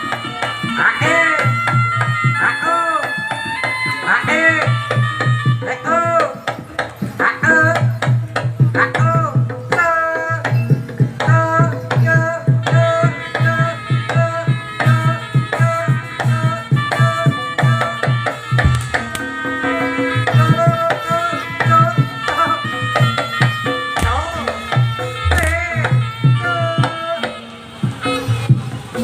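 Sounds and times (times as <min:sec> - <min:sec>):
hand drums beating fast rhythm: 0:00.0 - 0:29.0
sustained melody line: 0:18.6 - 0:20.2, 0:23.6 - 0:26.6.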